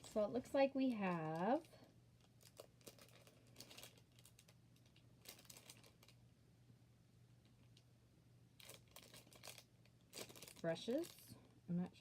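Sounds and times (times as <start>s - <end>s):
packaging rustling: 0.0s - 6.2s, 8.6s - 11.3s.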